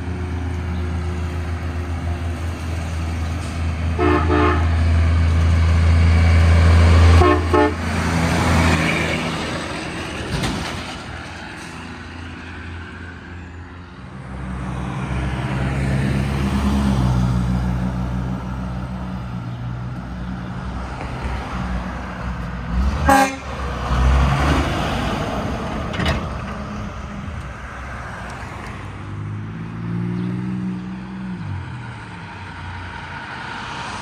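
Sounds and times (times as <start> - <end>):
truck engine drone: 0.0 - 34.0
vehicle engine: 0.0 - 34.0
truck horn honking: 3.9 - 5.0, 7.0 - 8.4, 22.8 - 23.9.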